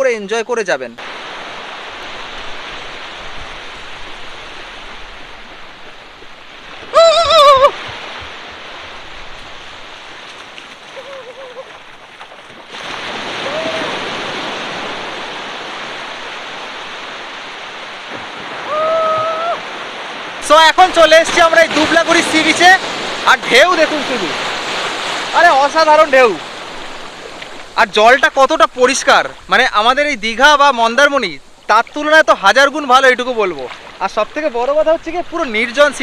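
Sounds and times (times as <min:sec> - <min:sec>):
surf breaking on shore: 0:00.9 - 0:36.0
person calling out: 0:06.9 - 0:07.8, 0:11.0 - 0:11.7, 0:13.4 - 0:14.0.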